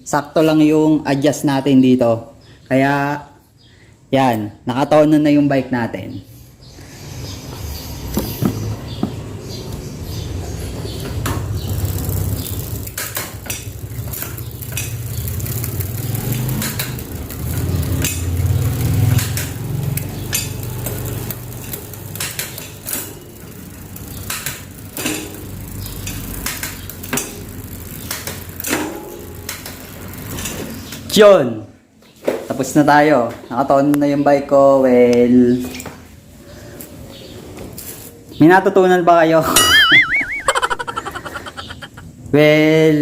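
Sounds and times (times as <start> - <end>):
bike chain running over sprockets: 11.4 - 31.0.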